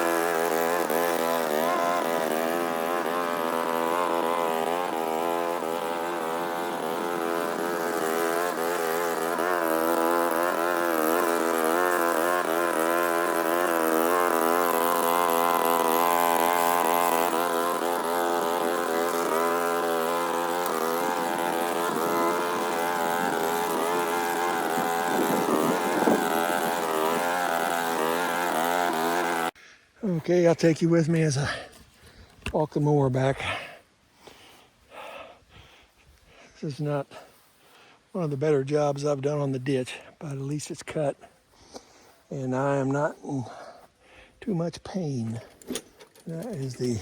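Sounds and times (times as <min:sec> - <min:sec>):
lawn mower engine cutting grass: 0:00.0 - 0:30.4, 0:36.6 - 0:41.2, 0:45.4 - 0:47.0.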